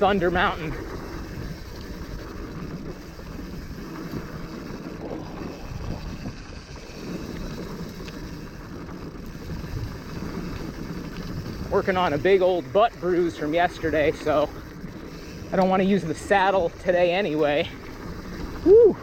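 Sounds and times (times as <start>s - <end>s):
wind rushing over microphone: 0.0s - 12.6s
bike tyres on dirt trail: 0.0s - 19.0s.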